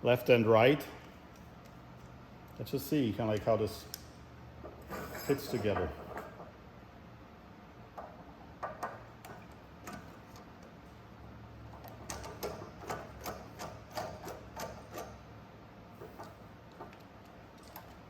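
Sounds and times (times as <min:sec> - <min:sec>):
metal parts clicking together: 0:11.8 - 0:15.2.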